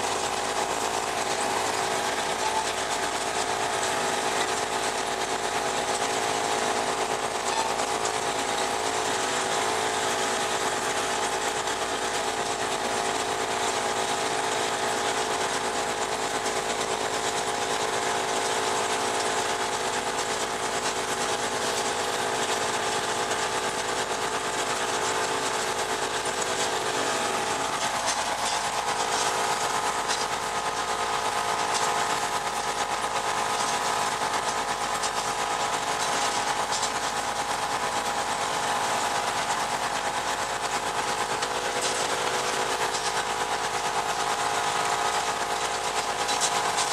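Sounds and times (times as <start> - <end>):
hay baler mechanical rattle: 0.0 - 46.9
diesel tractor engine under load: 23.7 - 46.9.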